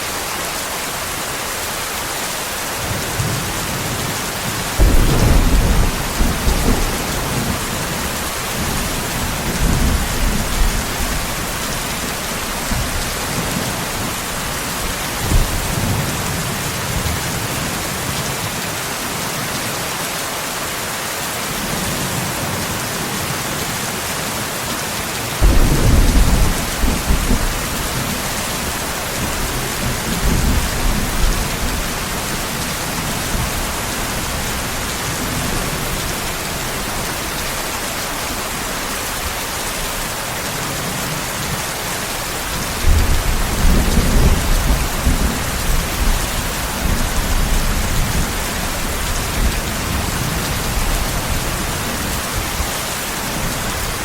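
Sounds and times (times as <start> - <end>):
heavy rain: 0.0 - 54.0
thunder rumbling: 4.7 - 17.3, 25.4 - 37.2, 42.7 - 52.4.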